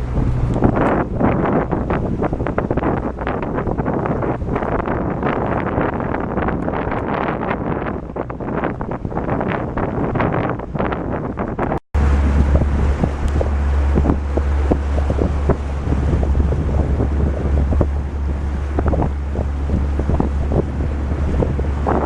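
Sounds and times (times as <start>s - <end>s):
boat motor drone: 0.0s - 22.0s
wind buffeting microphone: 0.0s - 22.0s
thumps and splashes: 12.0s - 22.0s.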